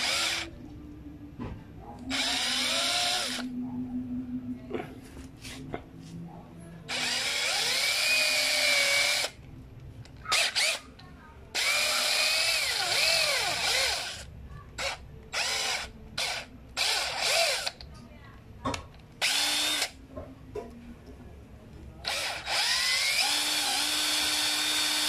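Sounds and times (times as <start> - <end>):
electric drill whining: 0.0 - 0.5, 2.1 - 3.5, 6.9 - 9.4, 10.3 - 10.8, 11.6 - 17.7, 19.2 - 20.0, 22.0 - 25.0.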